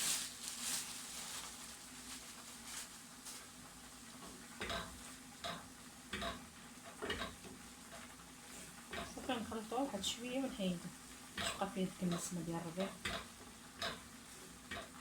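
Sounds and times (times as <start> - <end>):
sauce sizzling in a pan: 1.4 - 15.0
spoon knocking against pan: 4.6 - 7.5, 8.9 - 9.2, 11.4 - 14.1, 14.7 - 15.0.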